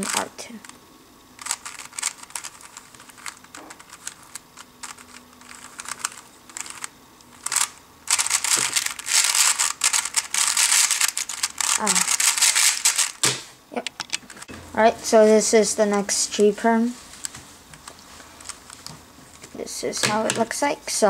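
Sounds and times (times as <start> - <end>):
puzzle cube plastic clicks: 1.4 - 14.5.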